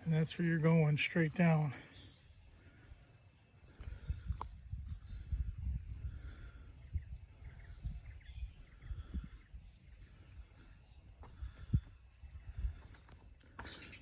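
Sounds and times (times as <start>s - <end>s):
faint bird chirps: 1.4s - 14.0s
wind buffeting microphone: 3.6s - 13.7s.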